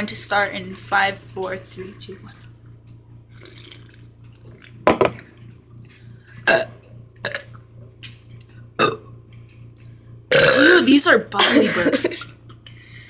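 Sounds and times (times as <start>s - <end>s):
short bubbly burps: 6.5s - 7.5s, 8.8s - 9.1s, 10.3s - 10.8s.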